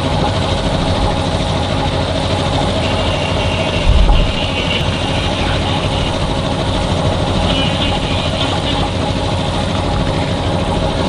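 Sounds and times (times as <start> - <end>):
machine engine droning: 0.0 - 11.0
low rumble: 3.5 - 7.5.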